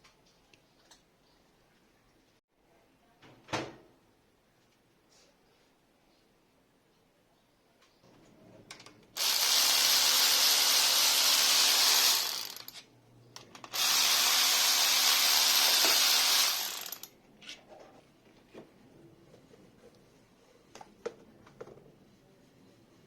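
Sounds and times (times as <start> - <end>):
power tool whirring: 9.2 - 12.8, 13.6 - 17.1.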